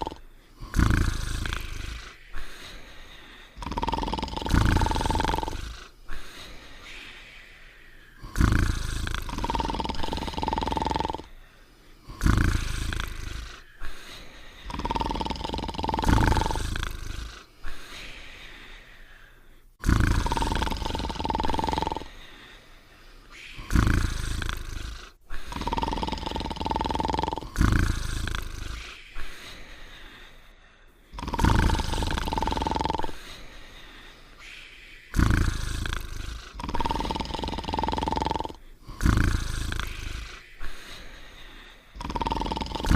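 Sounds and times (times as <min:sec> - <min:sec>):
cartoon dog snoring: 0:00.0 - 0:07.1, 0:08.2 - 0:11.4, 0:12.0 - 0:18.2, 0:19.8 - 0:22.5, 0:23.4 - 0:29.7, 0:31.1 - 0:33.6, 0:34.4 - 0:42.9.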